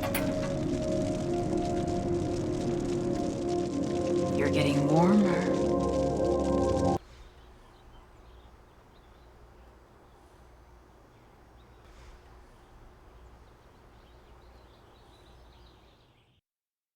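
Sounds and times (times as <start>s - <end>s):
low rumble: 0.0s - 7.0s.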